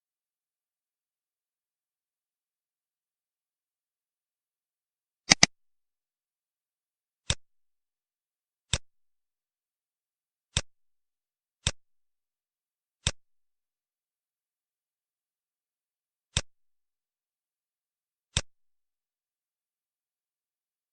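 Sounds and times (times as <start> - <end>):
sharp single clicks: 5.3 - 5.5.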